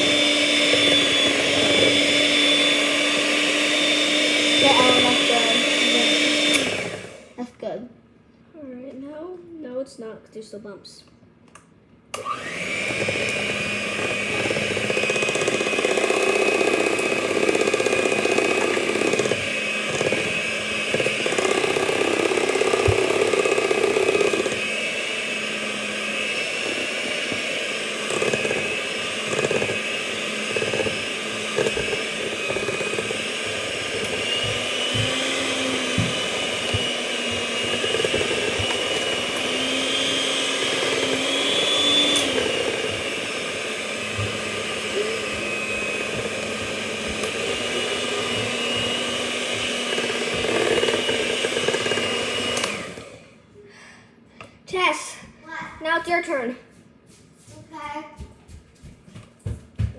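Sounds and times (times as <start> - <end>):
beaters churning batter: 0.0 - 7.3, 12.2 - 53.4
electric hand mixer running: 0.0 - 7.4, 12.2 - 53.5.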